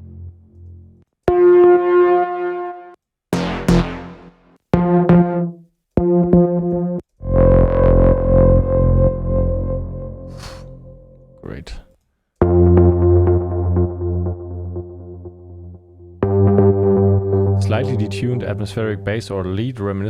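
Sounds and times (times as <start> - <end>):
synthesizer lead notes: 0.0 - 11.4, 12.4 - 19.6.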